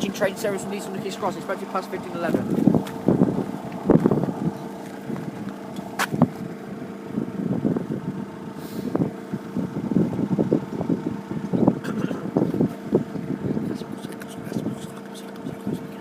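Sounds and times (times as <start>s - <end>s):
uneven rumbling: 0.0s - 16.0s.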